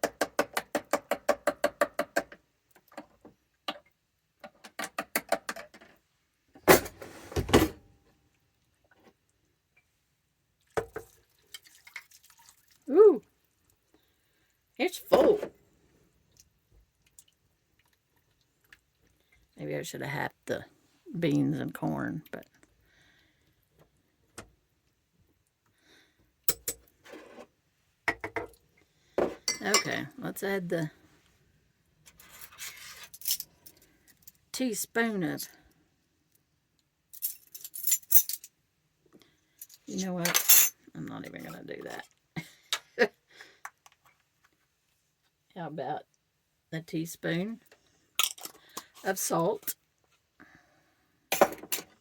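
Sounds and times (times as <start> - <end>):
kitchen utensils clinking: 29.2 - 30.0.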